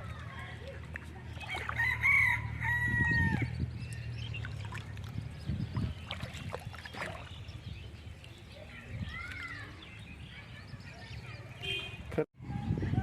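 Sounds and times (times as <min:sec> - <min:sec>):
water splashing and trickling: 0:00.0 - 0:11.0
rooster crowing: 0:01.8 - 0:03.4.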